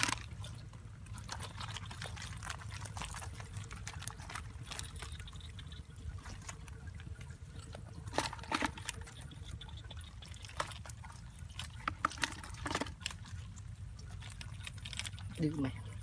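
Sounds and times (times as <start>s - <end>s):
water trickling and splashing: 0.0s - 16.0s.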